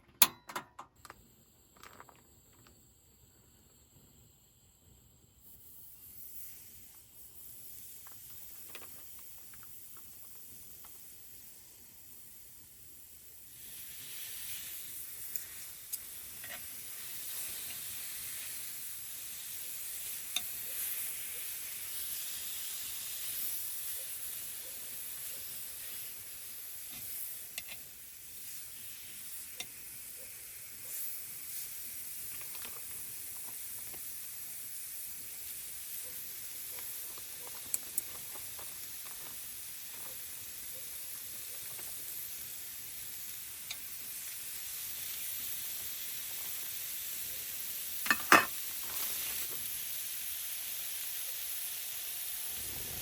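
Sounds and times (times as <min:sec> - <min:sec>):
food sizzling in a pan: 0:05.4 - 0:53.0.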